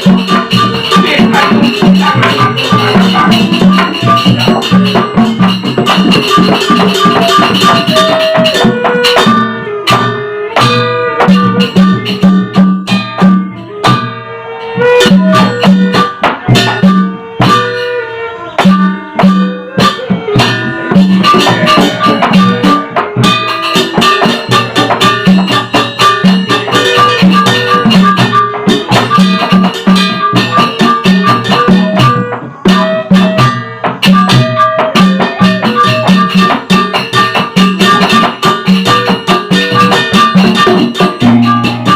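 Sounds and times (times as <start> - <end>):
low drum beat: 0.0 - 14.0
gamelan ensemble playing: 0.0 - 41.9.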